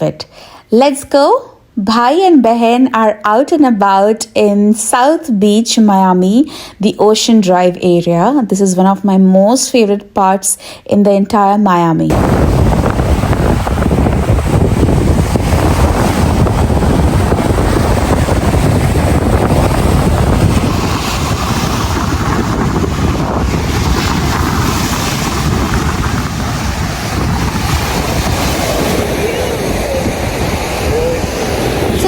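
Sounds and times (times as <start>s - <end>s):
wind buffeting microphone: 12.1s - 32.0s.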